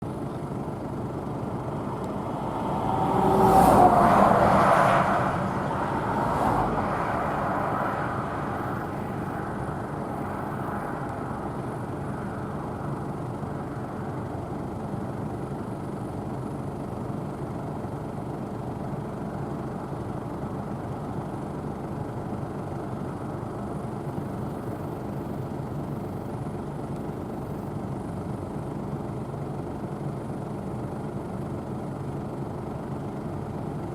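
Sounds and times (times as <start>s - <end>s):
combine harvester running: 0.0s - 33.9s.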